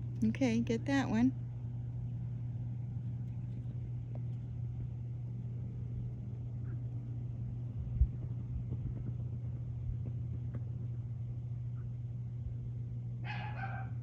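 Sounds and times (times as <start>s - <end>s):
low mechanical hum: 0.0s - 14.0s.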